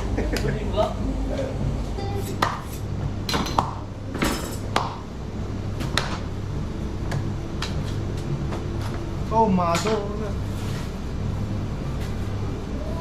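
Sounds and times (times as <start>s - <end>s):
steady low hum: 0.0s - 13.0s
dishes and utensils clinking: 2.1s - 4.9s.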